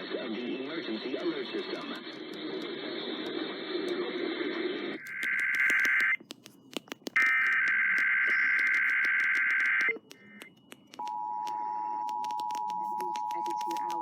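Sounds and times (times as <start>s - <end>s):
radio hiss and static: 0.0s - 6.2s.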